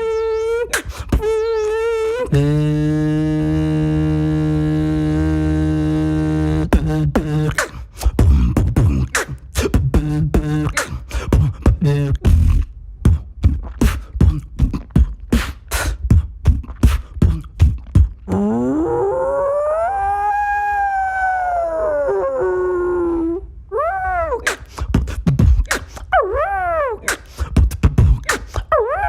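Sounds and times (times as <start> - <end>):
beatboxing: 0.0 - 19.0, 24.2 - 29.0
hummed tone: 1.2 - 7.3.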